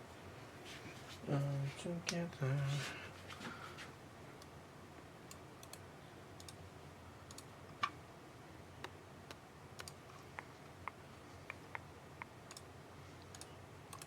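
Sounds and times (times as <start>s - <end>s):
keyboard and mouse clicks: 6.4s - 6.6s, 7.3s - 8.0s, 8.8s - 14.0s.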